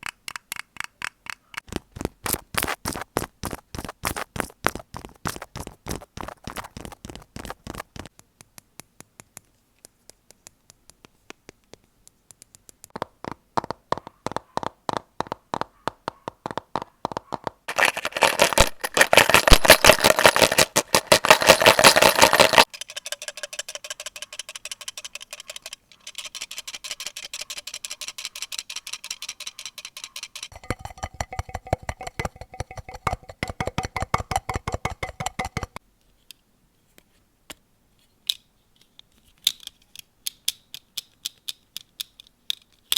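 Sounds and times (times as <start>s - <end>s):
rapid clicking and tapping on objects: 0.0s - 35.8s.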